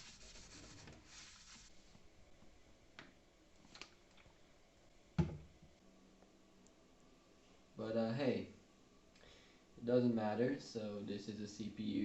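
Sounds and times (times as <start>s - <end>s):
soft rustle of handling: 0.0s - 2.5s.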